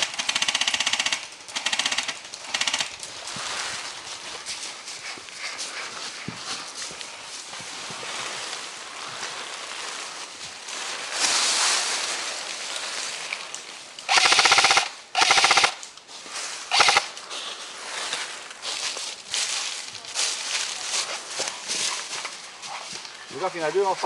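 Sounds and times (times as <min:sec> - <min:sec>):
airsoft gun full-auto bursts: 0:00.0 - 0:02.9, 0:14.1 - 0:15.8, 0:16.7 - 0:17.1.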